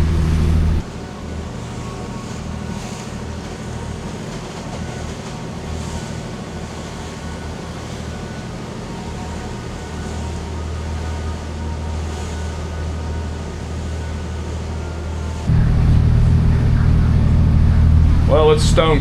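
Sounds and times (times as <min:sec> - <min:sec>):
diesel engines droning: 0:00.0 - 0:02.3, 0:06.8 - 0:19.0.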